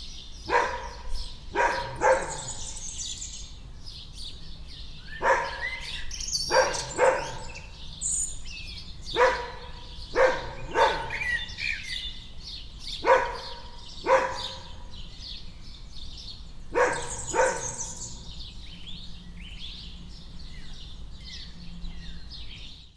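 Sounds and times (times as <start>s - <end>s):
birds chirping: 0.0s - 22.9s
dog barking: 0.5s - 2.8s, 5.2s - 7.8s, 9.1s - 11.7s, 12.9s - 14.9s, 16.7s - 18.3s.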